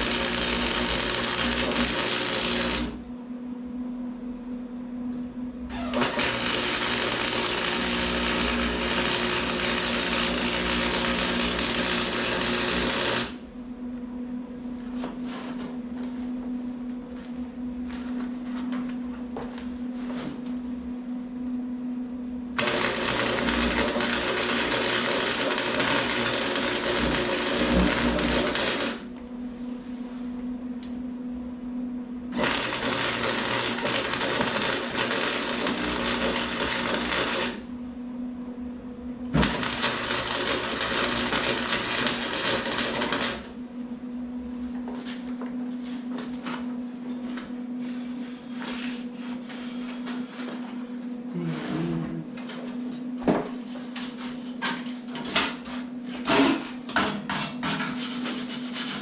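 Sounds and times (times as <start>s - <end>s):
welding arc: 0.0s - 3.0s, 5.7s - 13.4s, 22.6s - 29.1s, 32.3s - 37.7s, 39.3s - 43.6s
steady low hum: 0.0s - 57.6s.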